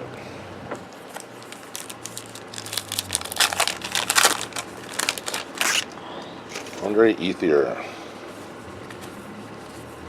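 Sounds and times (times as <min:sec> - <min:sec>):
card pack wrapper crinkling: 0:00.9 - 0:06.9
wrapper tearing: 0:01.1 - 0:06.0.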